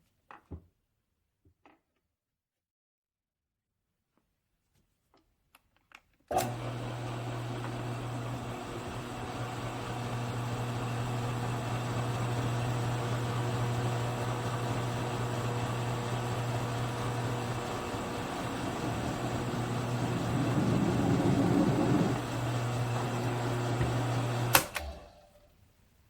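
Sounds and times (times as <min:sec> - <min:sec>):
electric motor humming: 0:06.4 - 0:25.1
motor switch click: 0:23.8 - 0:25.0.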